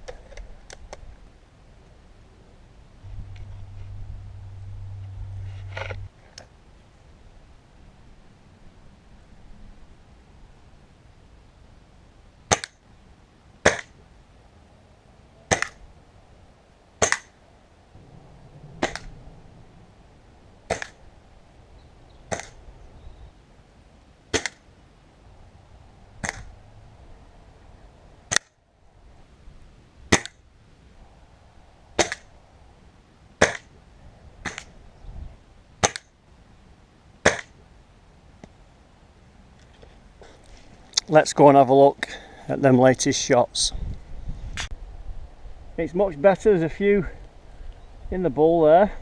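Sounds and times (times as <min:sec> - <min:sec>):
air rifle shots: 0:15.5 - 0:15.8, 0:17.0 - 0:17.3, 0:18.8 - 0:19.2, 0:20.7 - 0:21.0, 0:24.3 - 0:24.6, 0:26.2 - 0:26.5, 0:32.0 - 0:32.3, 0:33.4 - 0:33.7.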